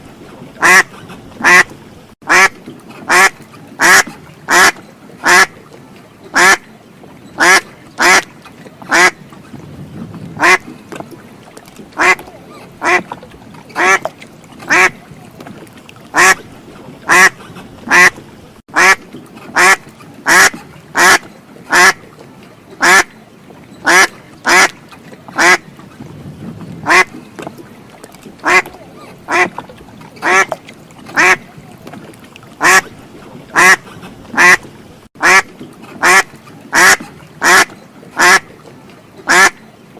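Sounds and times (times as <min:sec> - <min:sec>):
duck quacking: 0:00.6 - 0:01.7, 0:02.3 - 0:02.5, 0:03.1 - 0:05.5, 0:06.4 - 0:06.6, 0:07.4 - 0:08.3, 0:08.9 - 0:09.2, 0:10.4 - 0:10.6, 0:12.0 - 0:13.0, 0:13.8 - 0:14.1, 0:14.7 - 0:15.0, 0:16.1 - 0:16.4, 0:17.1 - 0:19.0, 0:19.6 - 0:22.0, 0:22.8 - 0:23.1, 0:23.8 - 0:24.7, 0:25.4 - 0:25.6, 0:26.8 - 0:27.1, 0:28.4 - 0:29.6, 0:30.2 - 0:30.6, 0:31.2 - 0:31.5, 0:32.6 - 0:32.9, 0:33.5 - 0:33.8, 0:34.4 - 0:34.6, 0:35.2 - 0:38.4, 0:39.3 - 0:39.6.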